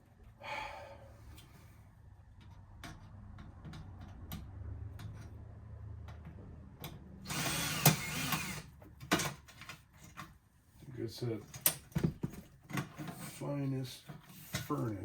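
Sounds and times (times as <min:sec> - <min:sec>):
power drill whining: 0:07.3 - 0:08.7.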